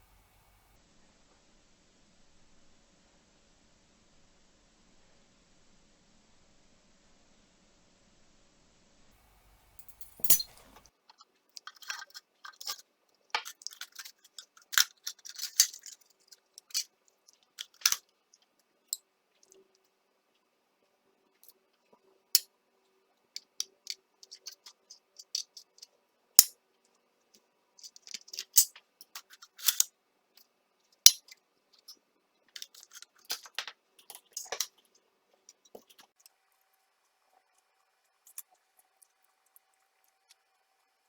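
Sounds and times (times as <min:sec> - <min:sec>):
small metal parts clicking: 0:09.6 - 0:19.0, 0:23.4 - 0:26.5, 0:27.8 - 0:29.9, 0:31.0 - 0:36.2, 0:38.2 - 0:40.4.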